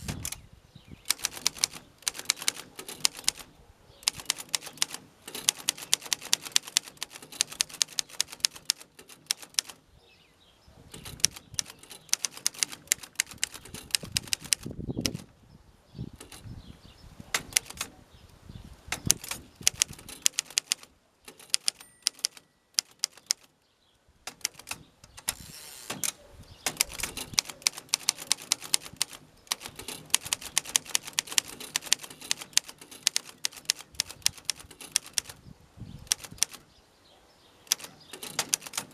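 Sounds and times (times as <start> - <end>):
manual typewriter typing: 1.1 - 9.8, 10.9 - 15.3, 17.4 - 17.9, 18.9 - 23.5, 24.3 - 35.4, 36.0 - 36.6, 37.7 - 38.9.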